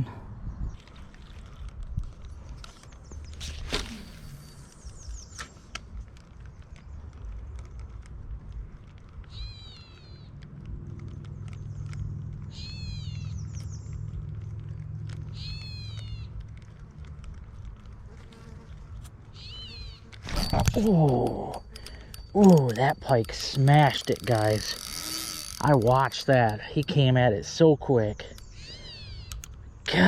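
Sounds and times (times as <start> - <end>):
bird calling: 9.2 - 10.4, 11.5 - 14.0, 15.2 - 16.4, 19.3 - 30.0.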